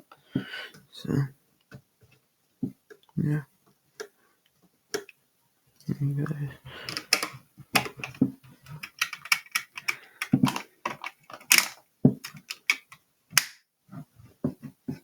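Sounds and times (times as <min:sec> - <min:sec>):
plastic bricks clicking: 0:06.9 - 0:13.6.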